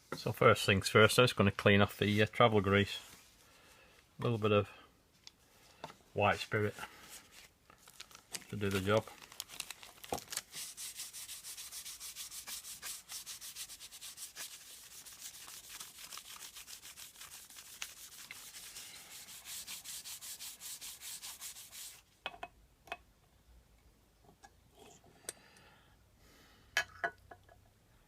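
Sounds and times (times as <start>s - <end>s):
rubbing strokes on metal: 10.5s - 22.0s.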